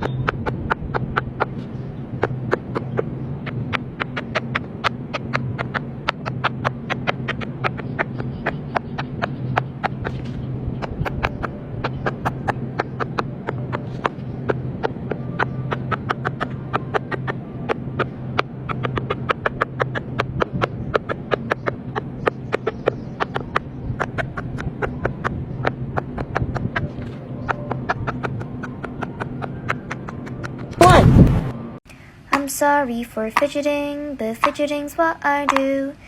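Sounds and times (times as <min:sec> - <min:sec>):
steady low hum: 0:00.0 - 0:36.0
fidget toy bubbles popping: 0:34.4 - 0:34.7, 0:35.5 - 0:35.7.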